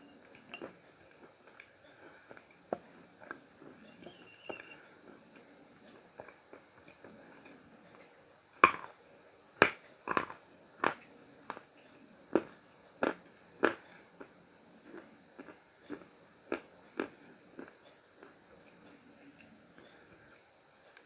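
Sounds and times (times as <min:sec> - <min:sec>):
faint chewing clicks: 0:09.6 - 0:21.0.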